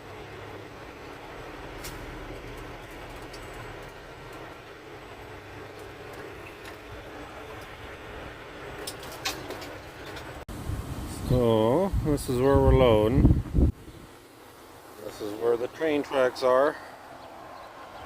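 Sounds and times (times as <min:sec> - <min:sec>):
diesel truck engine rumbling: 0:00.0 - 0:17.3
background hiss: 0:10.3 - 0:17.2.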